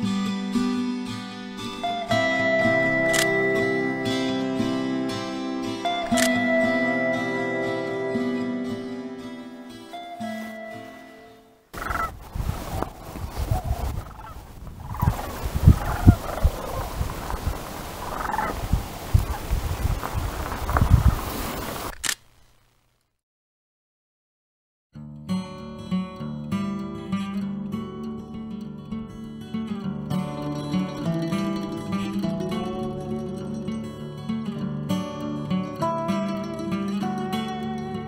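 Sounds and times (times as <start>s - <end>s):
acoustic guitar strumming: 0.0s - 11.8s, 25.0s - 38.0s
cranes trilling calls: 11.8s - 12.2s, 13.4s - 19.5s
wind buffeting microphone: 11.9s - 21.9s.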